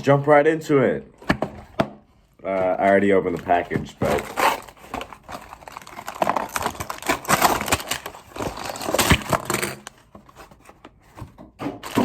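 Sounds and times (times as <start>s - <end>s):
plastic packaging crinkling: 2.4s - 10.6s.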